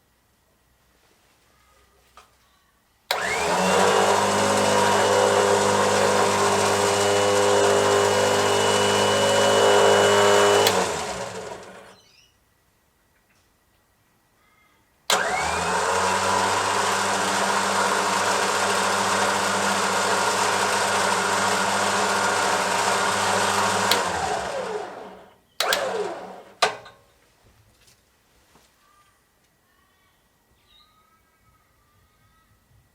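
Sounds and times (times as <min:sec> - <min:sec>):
electric winch motor running: 0:03.1 - 0:12.0, 0:15.1 - 0:26.9.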